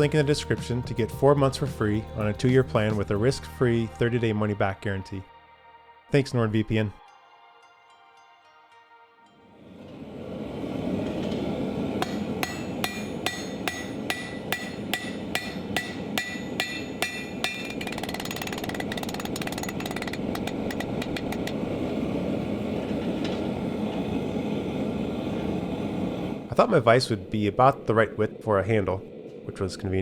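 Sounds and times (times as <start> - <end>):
hammer ringing on anvil: 12.0 - 21.5.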